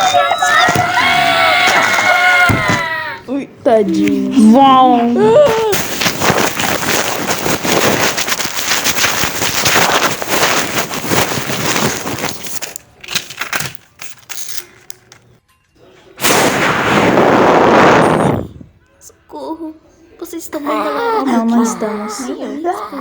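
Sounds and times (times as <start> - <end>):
person making explosion noises: 5.2 - 10.4, 16.2 - 18.8.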